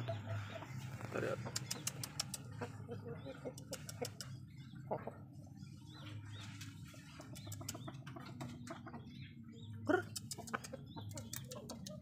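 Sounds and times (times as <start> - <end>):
high bird chirps: 6.0 - 12.0.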